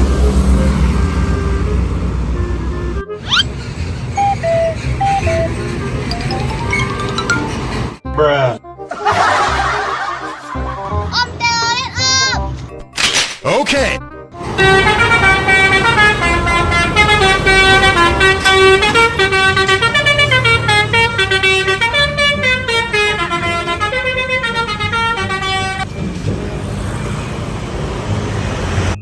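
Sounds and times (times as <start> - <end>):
multi-tone air horn tune: 2.2 - 7.6, 14.4 - 25.9.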